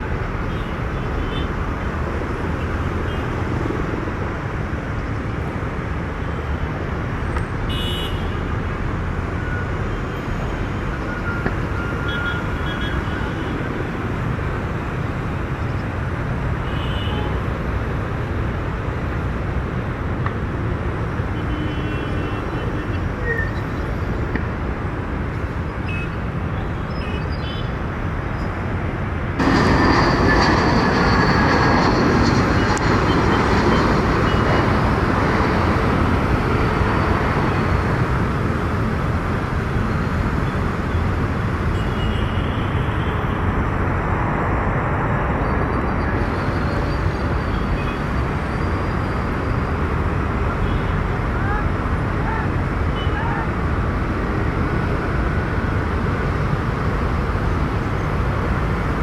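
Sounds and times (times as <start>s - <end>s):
distant engines rumbling: 22.3s - 41.8s, 43.4s - 59.0s.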